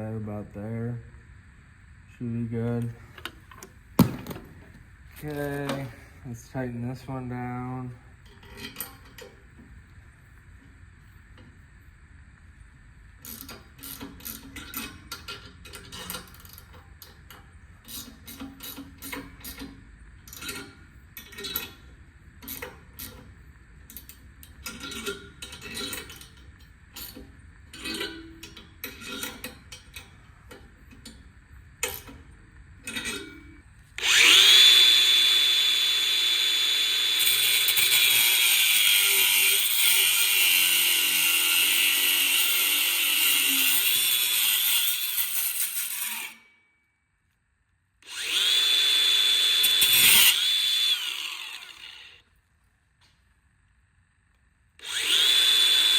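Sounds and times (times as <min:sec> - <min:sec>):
grinder whining: 0:34.0 - 0:46.5, 0:48.0 - 0:52.2, 0:54.8 - 0:55.9.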